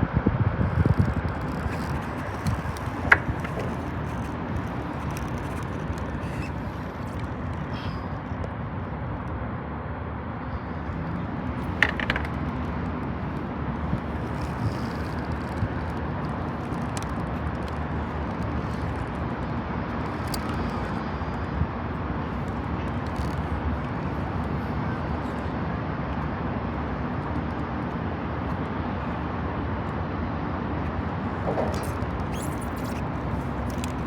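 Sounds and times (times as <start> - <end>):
wind buffeting microphone: 0.0 - 8.4.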